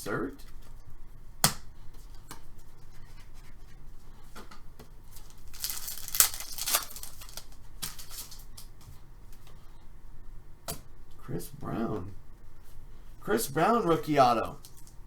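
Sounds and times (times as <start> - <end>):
wrapper tearing and crinkling: 5.2 - 8.5
card pack snap: 5.5 - 8.7.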